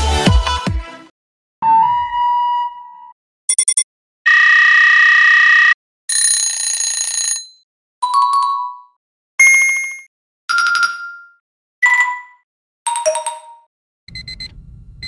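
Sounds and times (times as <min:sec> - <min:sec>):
electronic alarm tone: 0:01.6 - 0:05.8
quick electronic beeps: 0:03.5 - 0:03.8
bright ringing tone: 0:09.4 - 0:13.7.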